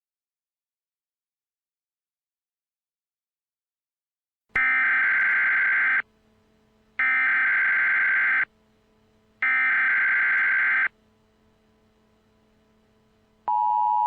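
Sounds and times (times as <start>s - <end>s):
digital data tone bursts: 7.0s - 8.5s, 9.4s - 10.9s.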